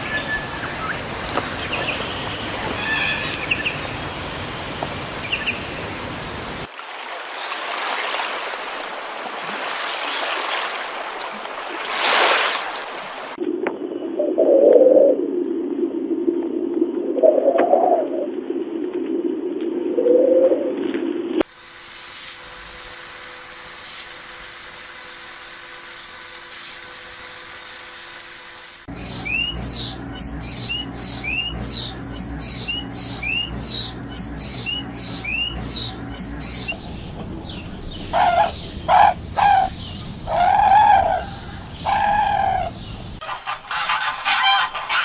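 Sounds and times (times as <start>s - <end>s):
dove cooing: 14.2s - 15.2s
small bird chirping: 28.8s - 38.7s
geese honking: 43.2s - 45.0s.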